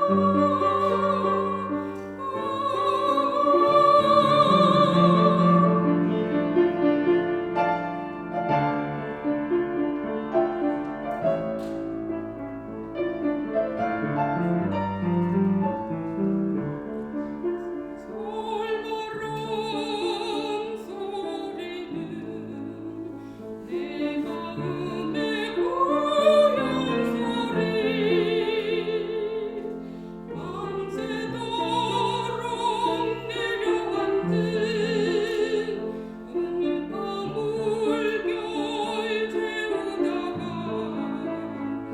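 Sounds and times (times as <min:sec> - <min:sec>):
soprano singing with vibrato: 0:00.0 - 0:08.0, 0:18.0 - 0:41.9
piano accompaniment: 0:00.0 - 0:41.9.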